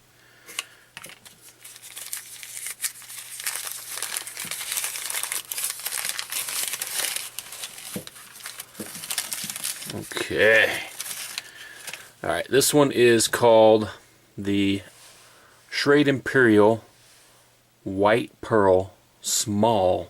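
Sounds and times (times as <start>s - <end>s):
packaging crinkling: 0.5s - 12.2s.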